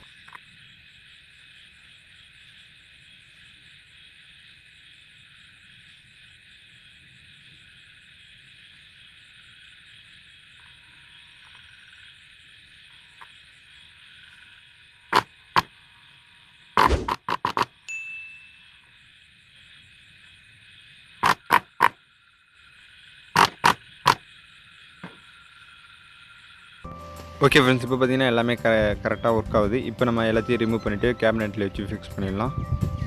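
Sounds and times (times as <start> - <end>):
faint hiss with high whine: 0.0 - 33.0
sharp clicks: 16.8 - 17.7, 21.2 - 22.0, 23.4 - 24.2.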